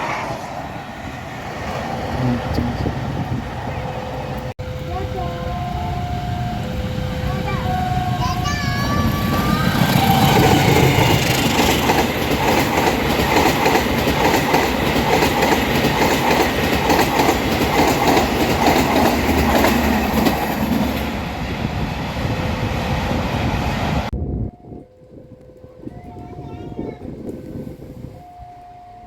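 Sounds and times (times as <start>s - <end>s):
train rumble: 0.0s - 29.0s
train wheels clacking on rails: 8.4s - 21.4s.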